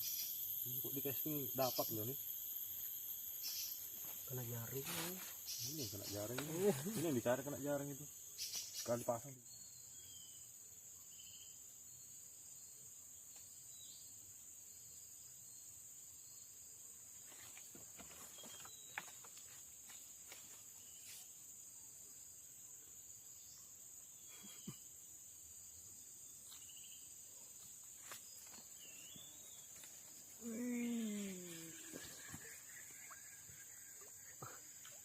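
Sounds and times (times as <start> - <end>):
high-pitched insect chorus: 0.0 - 35.0
faint bird chirps: 3.3 - 7.2, 8.3 - 14.2, 18.2 - 19.2, 22.8 - 25.3, 26.3 - 35.0.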